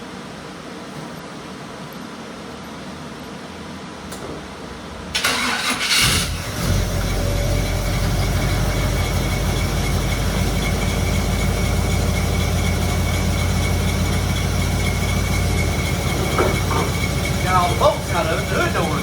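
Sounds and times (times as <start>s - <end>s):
engine cranking and idling: 4.8s - 19.0s.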